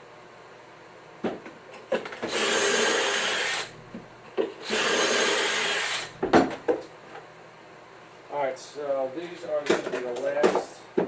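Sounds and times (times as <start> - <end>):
drill grinding into wood: 2.2 - 3.7, 4.6 - 6.2.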